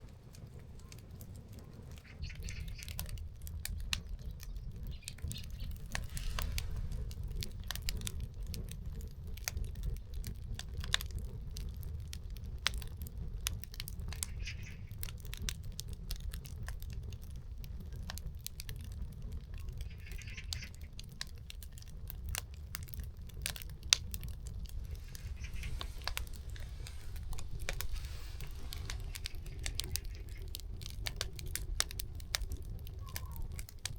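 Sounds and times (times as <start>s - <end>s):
fire low rumble: 0.0s - 33.9s
firewood crackling and popping: 0.0s - 33.9s.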